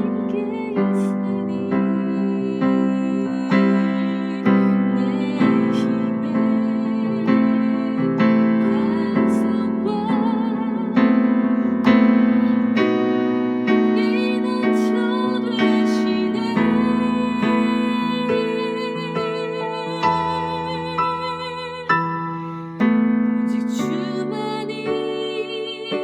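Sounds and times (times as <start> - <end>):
slow piano chords: 0.0 - 26.0.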